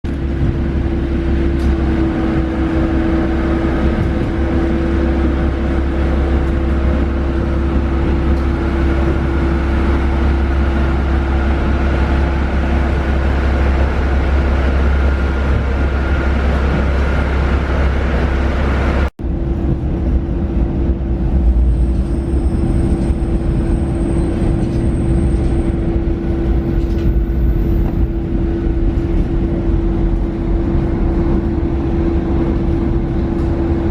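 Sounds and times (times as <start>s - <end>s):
train rumbling with hum: 0.0s - 33.9s.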